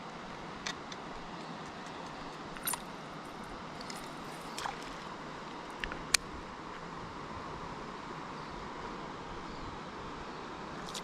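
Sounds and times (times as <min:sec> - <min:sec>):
fishing gear clicks and knocks: 0:00.6 - 0:04.8.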